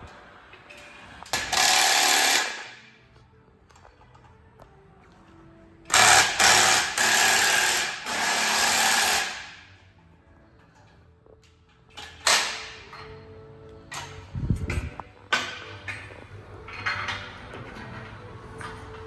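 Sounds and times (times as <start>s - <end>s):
power tool bursts: 1.3s - 2.8s, 5.9s - 9.6s.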